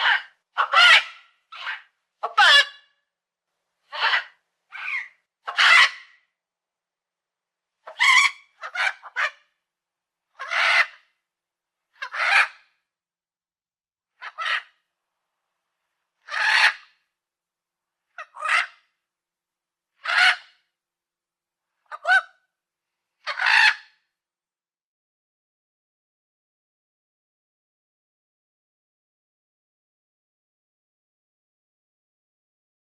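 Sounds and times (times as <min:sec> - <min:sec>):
parrot squawking: 0:00.0 - 0:02.8, 0:03.9 - 0:06.1, 0:07.9 - 0:09.3, 0:10.4 - 0:11.0, 0:12.0 - 0:12.5, 0:14.2 - 0:14.7, 0:16.3 - 0:16.9, 0:18.2 - 0:18.8, 0:20.0 - 0:20.4, 0:23.3 - 0:23.8.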